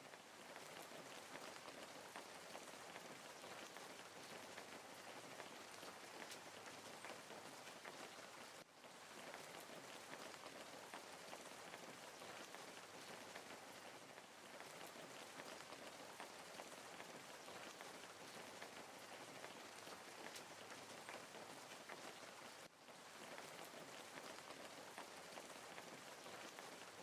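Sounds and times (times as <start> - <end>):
wood fire crackling: 0.0 - 27.0.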